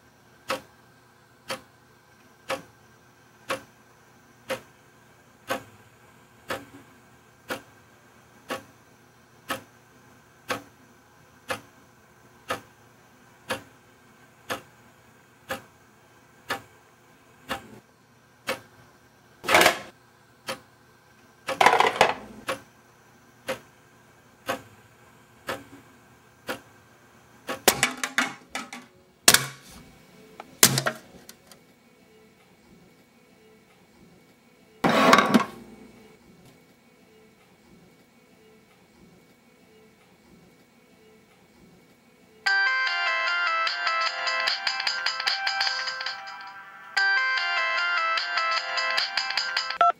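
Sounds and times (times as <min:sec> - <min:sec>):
clattering and knocking: 0:21.6 - 0:22.2, 0:27.7 - 0:28.9.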